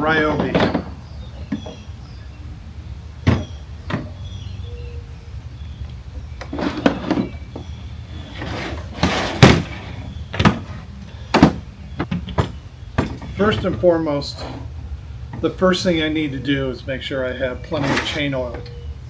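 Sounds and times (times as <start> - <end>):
scraping rustle: 6.4 - 11.2, 17.7 - 18.6.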